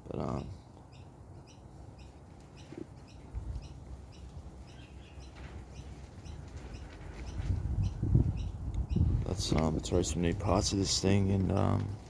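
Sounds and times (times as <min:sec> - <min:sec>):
small bird chirping: 0:00.8 - 0:09.2.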